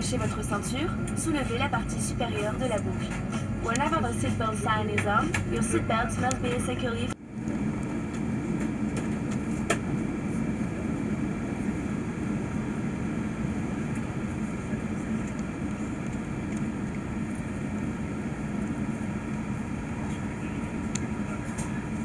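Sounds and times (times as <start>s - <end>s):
faint steady tones: 0.0s - 7.2s
aircraft cabin hum: 0.0s - 22.0s.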